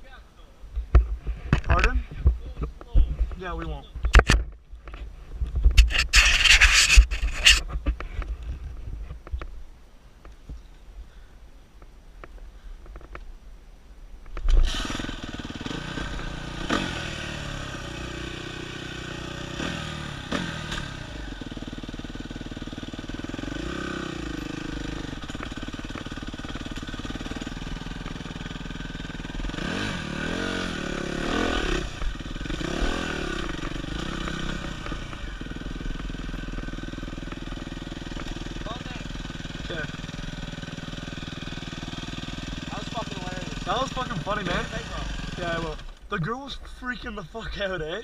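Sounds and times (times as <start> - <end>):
dirt bike engine revving: 14.5 - 46.0.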